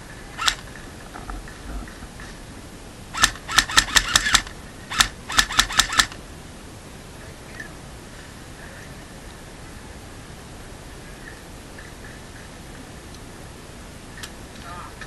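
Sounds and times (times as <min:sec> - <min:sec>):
airsoft gun shots: 0:03.1 - 0:06.2.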